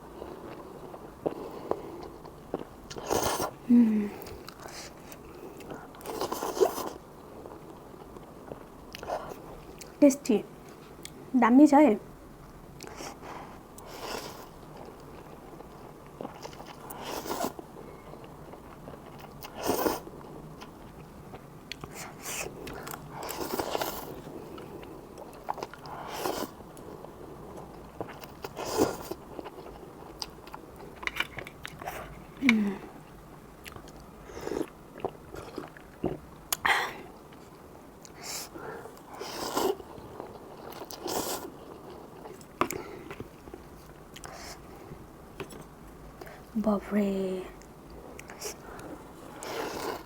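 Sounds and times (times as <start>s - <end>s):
chewing noodles: 4.2s - 10.0s, 12.8s - 32.4s, 33.6s - 44.9s, 47.6s - 50.0s.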